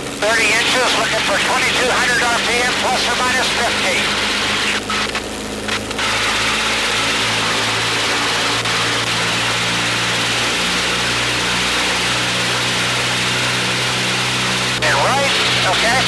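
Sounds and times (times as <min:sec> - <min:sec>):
aircraft piston engine and propeller: 0:00.0 - 0:16.0.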